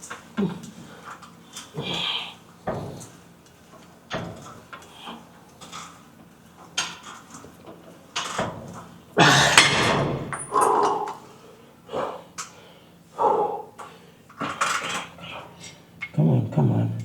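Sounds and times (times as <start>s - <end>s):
dumbbells knocking and clinking: 9.5s - 11.2s.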